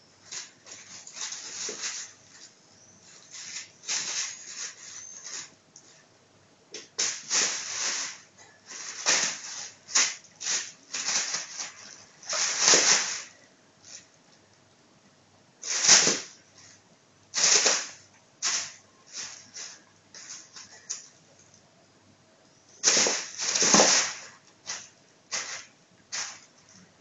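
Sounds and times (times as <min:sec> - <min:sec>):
plastic bag crinkling: 0:00.3 - 0:02.5, 0:07.0 - 0:13.4, 0:22.8 - 0:26.8.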